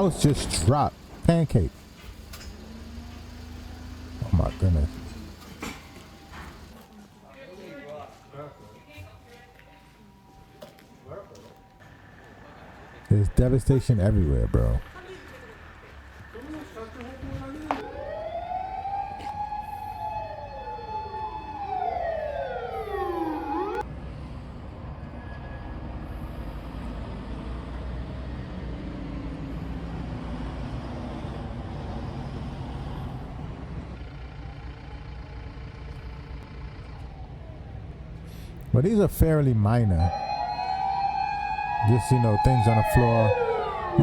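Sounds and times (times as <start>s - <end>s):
emergency sirens wailing: 0.0s - 1.7s, 2.3s - 6.9s, 7.9s - 23.9s, 25.0s - 44.0s.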